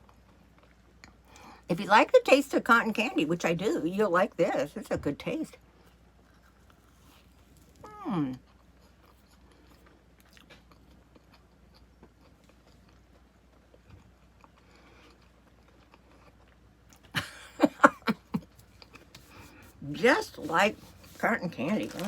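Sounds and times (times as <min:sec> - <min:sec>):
chewing soft candy: 0:00.0 - 0:01.7, 0:05.6 - 0:17.2, 0:18.4 - 0:19.7.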